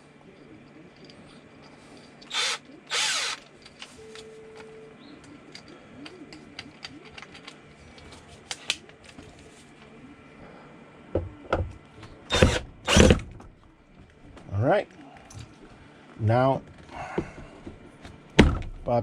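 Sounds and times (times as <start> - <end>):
tools clicking and knocking: 5.5 - 8.1.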